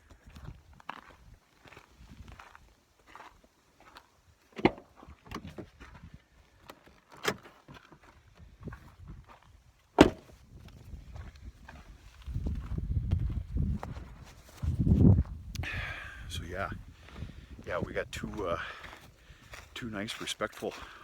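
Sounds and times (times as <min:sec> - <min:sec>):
truck door knocks and thuds: 0:10.0 - 0:10.3
footsteps: 0:17.0 - 0:21.0.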